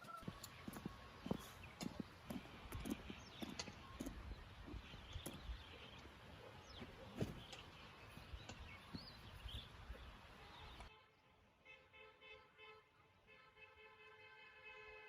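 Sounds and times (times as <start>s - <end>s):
bird chirps: 0.0s - 10.9s.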